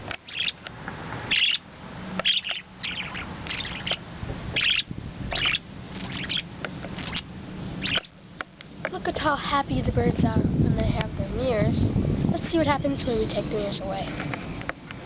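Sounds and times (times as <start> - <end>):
parakeets chirping and chattering: 0.0 - 0.7, 1.3 - 8.6, 12.4 - 14.3.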